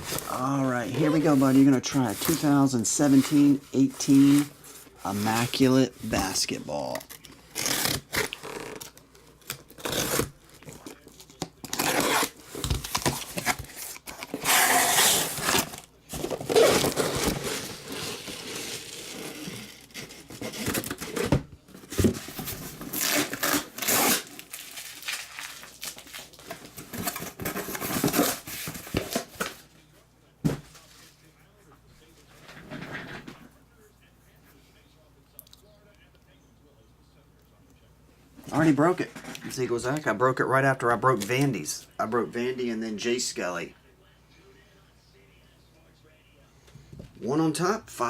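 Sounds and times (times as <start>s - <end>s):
plastic wrap tearing and crinkling: 6.9s - 21.2s, 22.2s - 29.6s.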